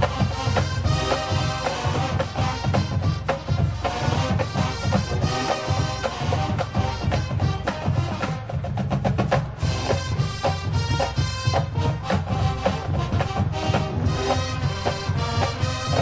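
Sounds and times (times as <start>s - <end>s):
marching band brass: 0.0s - 16.0s
rapid drum strokes: 0.0s - 16.0s.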